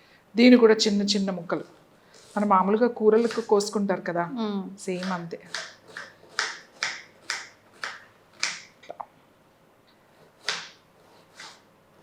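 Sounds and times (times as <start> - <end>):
knife chopping on cutting board: 5.0 - 8.7, 10.4 - 11.6.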